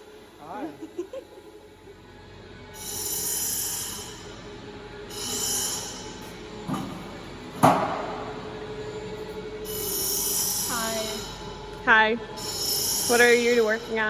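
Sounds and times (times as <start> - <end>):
bandsaw cutting steel: 2.8 - 4.4, 5.1 - 6.4, 9.6 - 11.5, 12.4 - 14.0.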